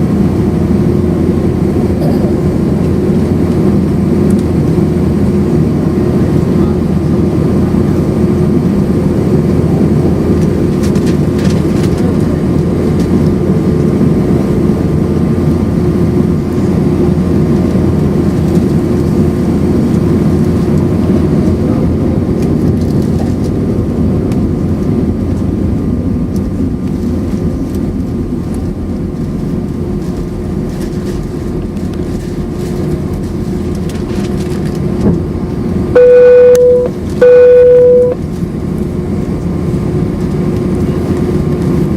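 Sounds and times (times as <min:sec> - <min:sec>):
loud electronic beep: 0:36.0 - 0:38.2.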